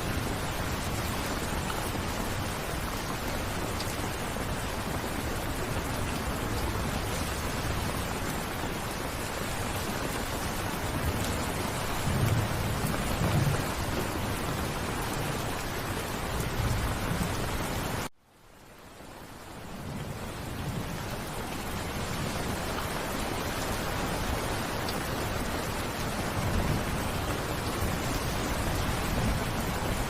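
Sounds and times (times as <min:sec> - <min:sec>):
heavy rainfall: 0:00.0 - 0:30.0
low thunder rolls: 0:11.8 - 0:14.7.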